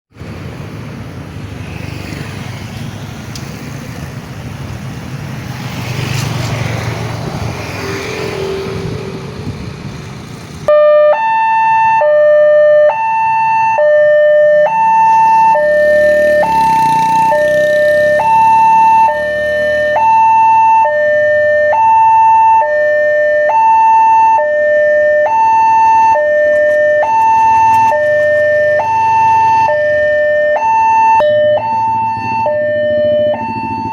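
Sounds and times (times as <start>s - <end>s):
traffic noise: 0.1s - 33.9s
level crossing two-tone alarm: 10.7s - 33.9s.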